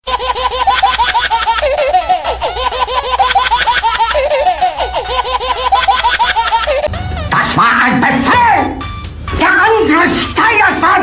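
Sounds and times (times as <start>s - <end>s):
high laughing voice giggling: 0.0s - 6.9s
fast beat with pulsing bass: 6.7s - 11.0s.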